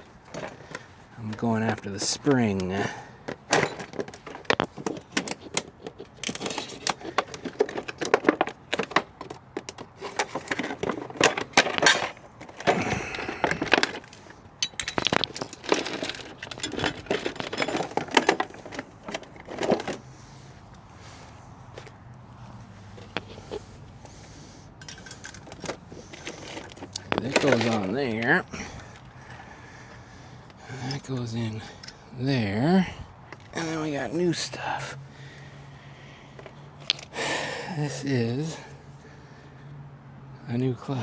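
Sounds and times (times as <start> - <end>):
metal parts clinking and rattling: 0.0 - 20.1, 24.8 - 30.1.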